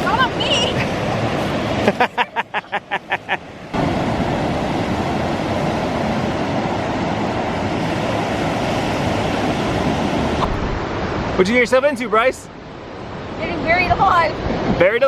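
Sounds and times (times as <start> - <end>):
ocean surf breaking: 0.0 - 15.0
wind buffeting microphone: 3.5 - 11.4, 12.5 - 15.0.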